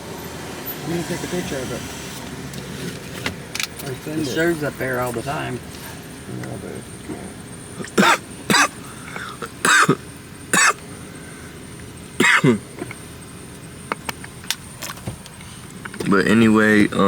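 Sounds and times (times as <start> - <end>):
person coughing: 7.8 - 10.8, 12.2 - 12.7.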